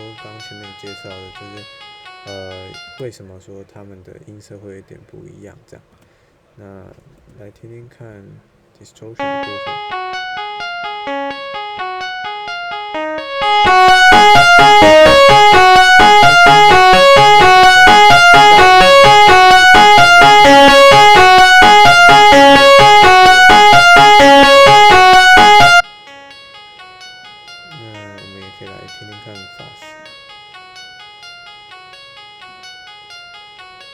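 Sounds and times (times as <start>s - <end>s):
distorted electric guitar riff: 9.2s - 25.8s.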